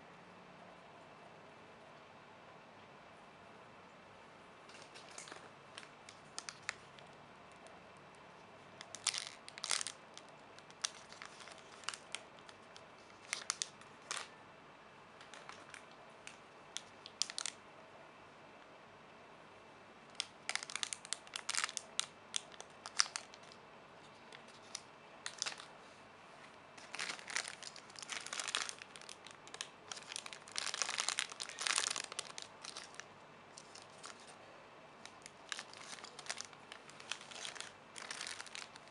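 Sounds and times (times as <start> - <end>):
plastic packaging crinkling: 4.7 - 7.7, 8.8 - 14.4, 15.2 - 17.6, 20.1 - 25.8, 26.8 - 34.4, 35.0 - 38.9.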